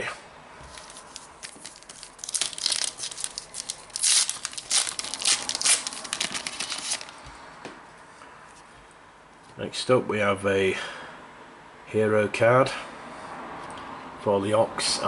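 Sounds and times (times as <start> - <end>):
wrapper tearing and crinkling: 0.7 - 7.2.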